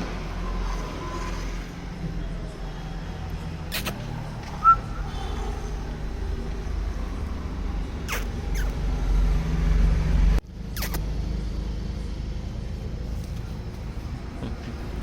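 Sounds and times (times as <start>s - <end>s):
low rumble of engine or traffic: 0.0s - 15.0s.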